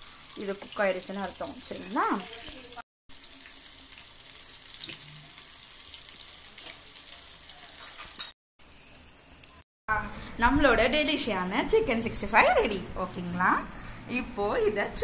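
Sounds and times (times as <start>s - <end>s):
chicken sizzling in hot oil: 0.0s - 9.7s.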